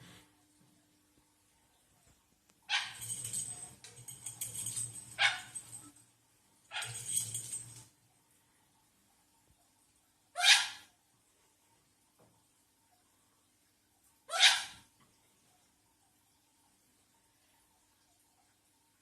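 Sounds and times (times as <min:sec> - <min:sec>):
rustling: 0:02.8 - 0:06.0, 0:06.8 - 0:07.9.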